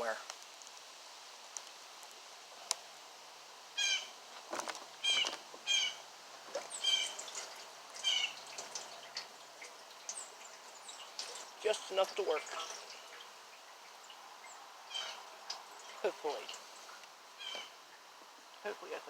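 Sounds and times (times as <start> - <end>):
bird calling harshly: 3.8 - 4.2, 5.0 - 6.0, 6.7 - 7.4, 8.0 - 8.5, 13.9 - 17.8.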